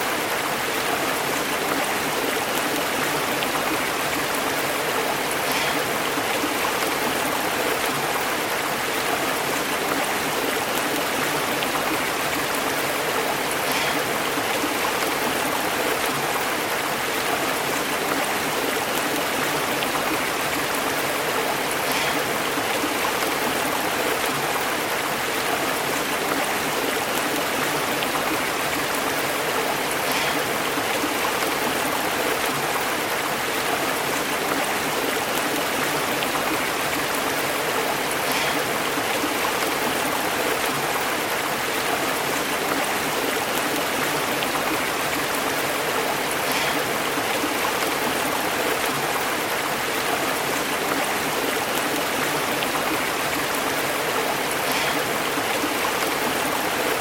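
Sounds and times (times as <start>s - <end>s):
stream flowing over rocks: 0.0s - 57.0s.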